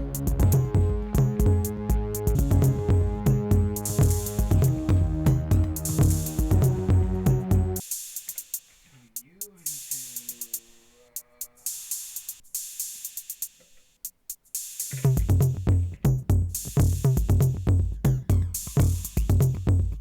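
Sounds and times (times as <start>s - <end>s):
deep kick and bass pattern: 0.0s - 7.8s, 14.9s - 20.0s
drum machine hi-hat hits: 0.0s - 20.0s.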